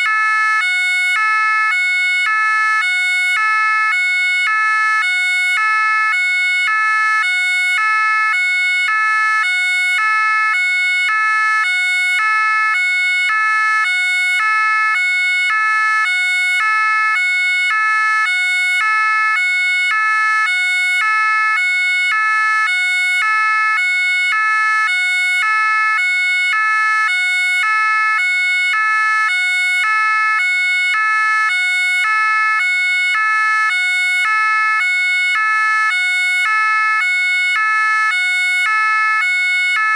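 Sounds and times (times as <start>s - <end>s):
two-tone siren: 0.0s - 39.9s.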